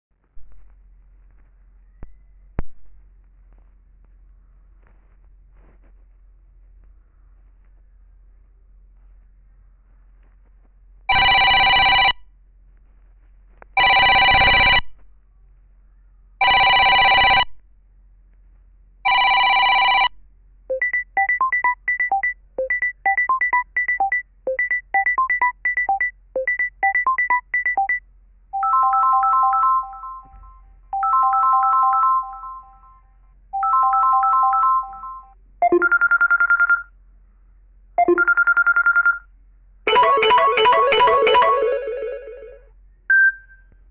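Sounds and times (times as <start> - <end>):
phone ringtone chimes: 11.1 - 12.2, 28.6 - 30.3, 31.0 - 32.8, 33.6 - 36.8, 39.9 - 42.6.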